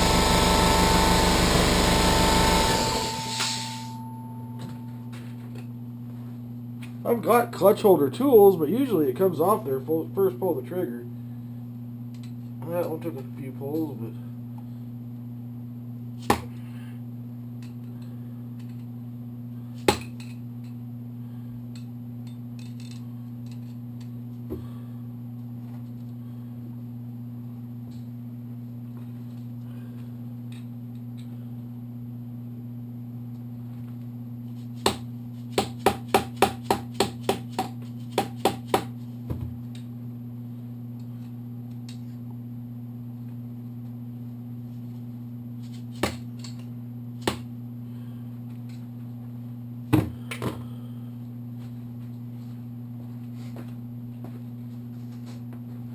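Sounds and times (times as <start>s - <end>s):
steady low hum: 0.0s - 55.9s.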